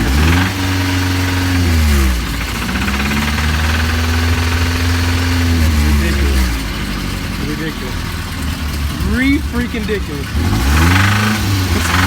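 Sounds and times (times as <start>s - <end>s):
engine rod knock: 0.0s - 7.4s
pickup engine revving: 0.0s - 12.0s.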